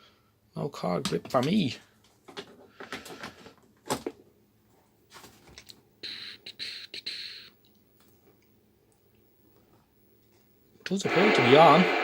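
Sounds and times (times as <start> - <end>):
radio static hiss: 10.9 - 12.0.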